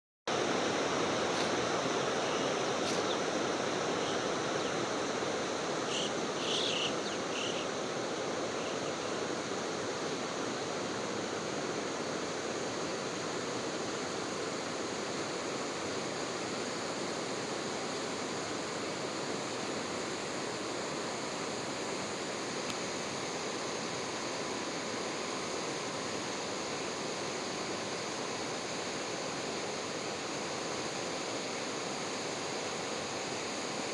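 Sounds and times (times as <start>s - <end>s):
high chirps: 5.9s - 7.7s.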